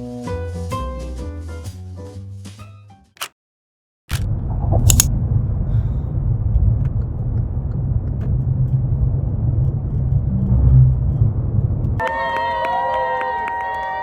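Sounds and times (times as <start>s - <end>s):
sharp click: 4.1s - 5.1s
low outdoor rumble: 4.1s - 12.0s.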